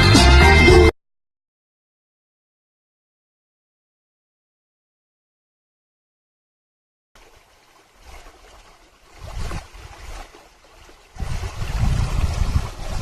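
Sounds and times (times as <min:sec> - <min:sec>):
wind buffeting microphone: 0:09.0 - 0:13.0.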